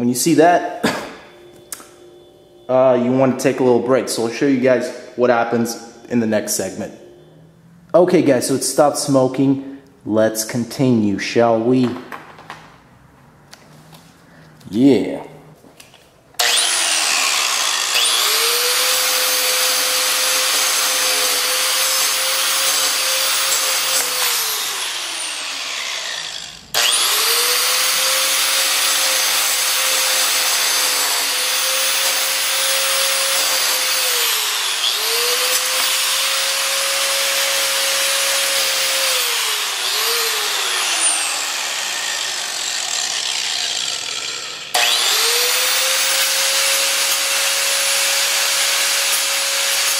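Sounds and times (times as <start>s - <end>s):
angle grinder grinding: 16.4s - 49.9s.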